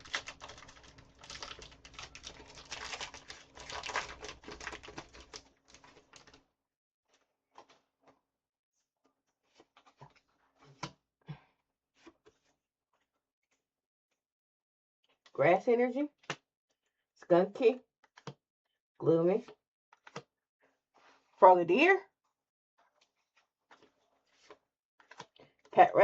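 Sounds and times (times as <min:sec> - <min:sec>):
packaging crackling and crinkling: 0:00.0 - 0:06.4.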